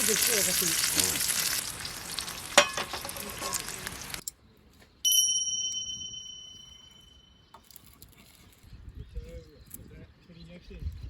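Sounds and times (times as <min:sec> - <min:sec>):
bacon and eggs sizzling in a pan: 0:00.0 - 0:04.2
metallic ding: 0:05.1 - 0:07.5.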